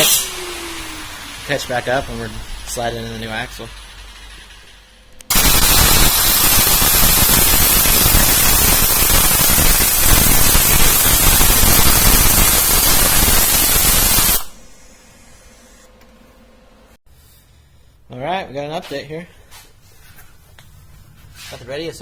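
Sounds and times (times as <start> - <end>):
static hiss: 5.3 - 14.6.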